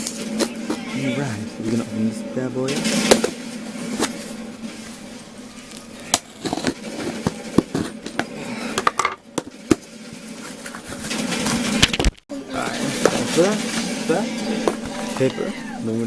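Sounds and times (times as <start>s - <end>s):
cardboard crackling and rustling: 0.0s - 8.6s, 9.3s - 16.0s
clicks of parcel being cut: 2.7s - 8.3s.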